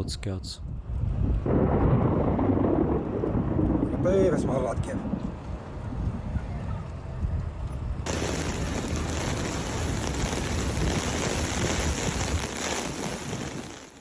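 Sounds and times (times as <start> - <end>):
storm wind buffeting microphone: 0.0 - 14.0
heavy rain hissing: 8.1 - 14.0.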